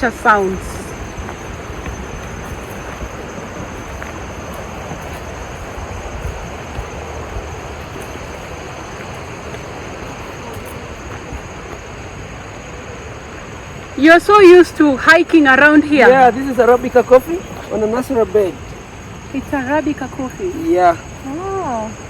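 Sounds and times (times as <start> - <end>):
wind rumble on microphone: 0.0 - 14.8
stream water rushing: 0.0 - 22.0.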